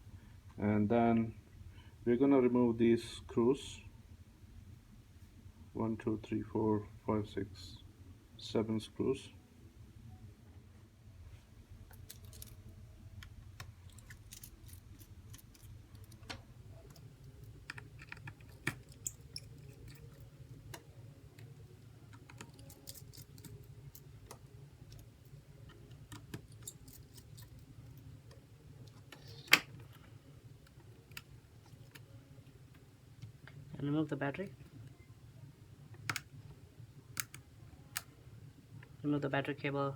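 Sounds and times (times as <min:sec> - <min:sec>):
low steady hum: 0:00.0 - 0:39.9
small tools clicking on phone parts: 0:13.6 - 0:30.1, 0:36.0 - 0:36.3, 0:37.2 - 0:37.4.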